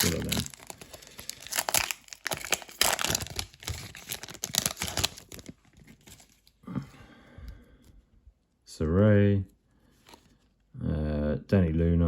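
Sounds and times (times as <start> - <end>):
foil wrapper crinkling and tearing: 0.0 - 6.5.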